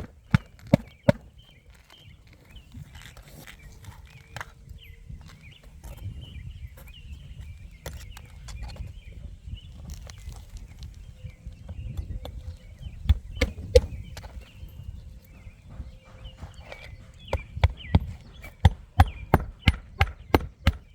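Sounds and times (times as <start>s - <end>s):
clicks and scuffs on roof: 0.0s - 6.1s, 9.8s - 20.9s
small birds chirping: 0.0s - 20.9s
wind rumble on microphone: 0.0s - 20.9s
sharp knocks: 16.1s - 20.9s.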